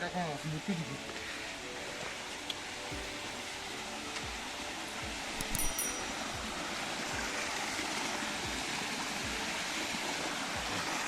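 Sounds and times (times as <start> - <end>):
stream water rushing: 0.0 - 11.0.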